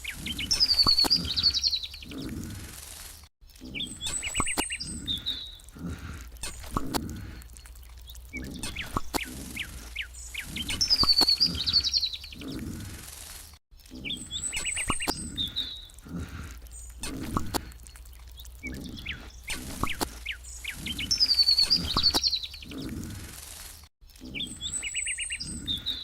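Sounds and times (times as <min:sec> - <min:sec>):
rapid high bird trill: 0:00.0 - 0:05.6, 0:08.0 - 0:13.4, 0:17.9 - 0:26.0
small birds chirping: 0:00.0 - 0:26.0.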